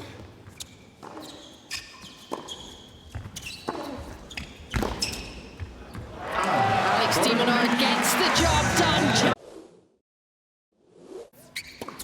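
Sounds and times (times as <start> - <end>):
shoes squeaking on court: 0.0 - 6.2, 11.4 - 12.0.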